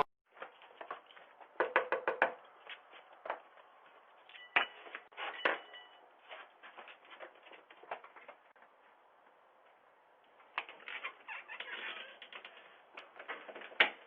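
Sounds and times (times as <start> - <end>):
knocks and taps: 1.6 - 2.4.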